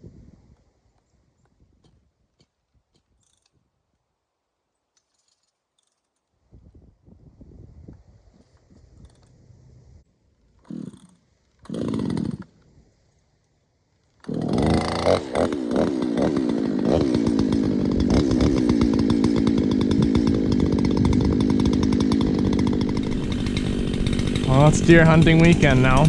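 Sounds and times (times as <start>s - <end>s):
chainsaw starting and running: 10.6s - 12.7s, 14.1s - 26.0s.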